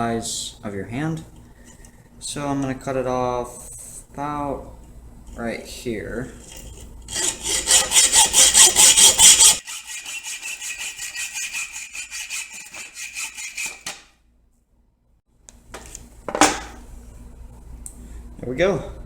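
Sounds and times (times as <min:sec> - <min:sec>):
hacksaw cutting steel bar: 0:06.5 - 0:14.1.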